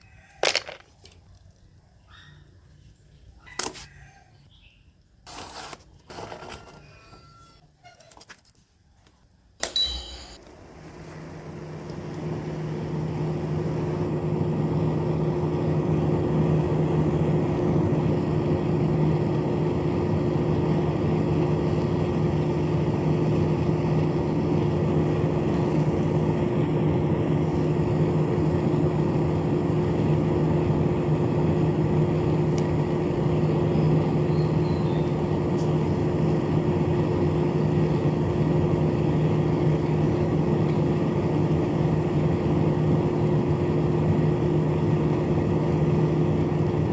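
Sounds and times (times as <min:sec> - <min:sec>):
small electric fan motor humming: 0:09.6 - 0:46.9.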